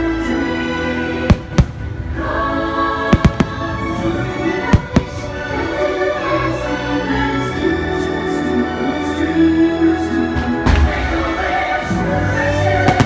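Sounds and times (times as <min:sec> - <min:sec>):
fireworks show music: 0:00.0 - 0:13.0
firework bursts banging: 0:01.3 - 0:02.0, 0:03.1 - 0:03.8.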